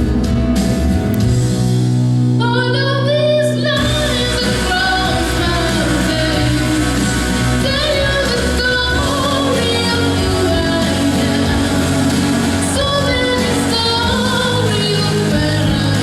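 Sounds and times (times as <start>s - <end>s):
instrumental backing music: 0.0s - 16.0s
woman singing: 2.4s - 16.0s.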